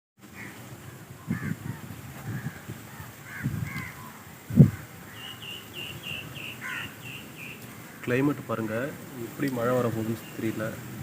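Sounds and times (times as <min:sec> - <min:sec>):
crows cawing: 0:00.3 - 0:00.6, 0:01.2 - 0:08.3.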